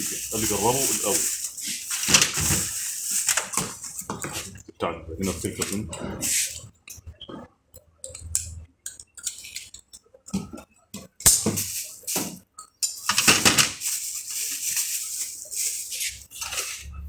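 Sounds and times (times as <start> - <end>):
metal parts clicking and clinking: 12.6 - 16.9.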